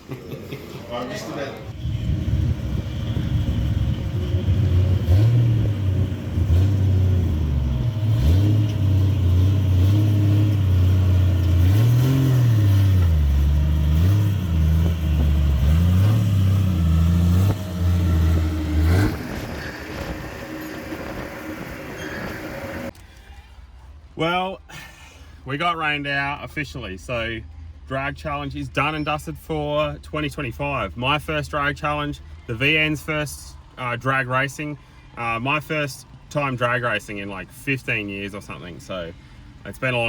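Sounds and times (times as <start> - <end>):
car engine revving: 1.7 - 22.9.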